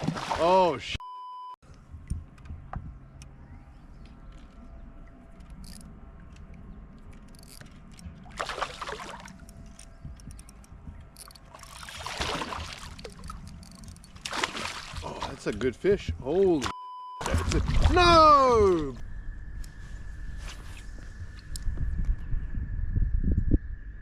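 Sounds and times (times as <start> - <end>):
steady low rumble: 1.6 - 16.5, 18.9 - 24.0
fish splashing at the surface: 8.3 - 9.3, 11.5 - 13.3, 14.2 - 15.4, 17.2 - 18.2.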